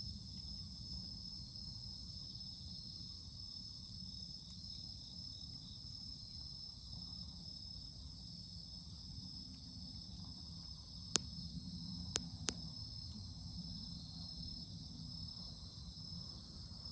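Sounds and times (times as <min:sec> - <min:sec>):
insect chorus: 0:00.0 - 0:16.9
campfire pops: 0:11.1 - 0:11.4, 0:12.1 - 0:12.7.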